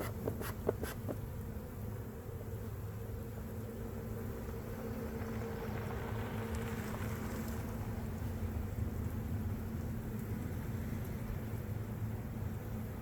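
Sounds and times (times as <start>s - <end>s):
bees buzzing: 0.0s - 6.4s.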